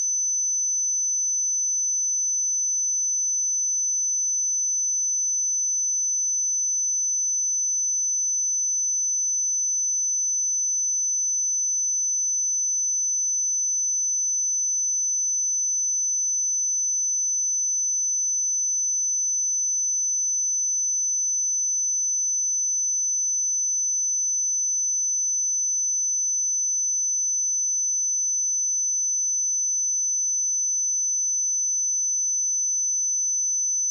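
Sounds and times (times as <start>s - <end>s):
high-pitched sine test tone: 10.5s - 33.9s.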